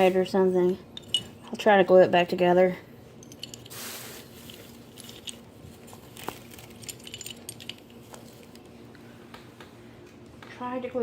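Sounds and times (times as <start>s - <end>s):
small clicks and clinks: 3.2s - 3.8s, 4.4s - 8.6s.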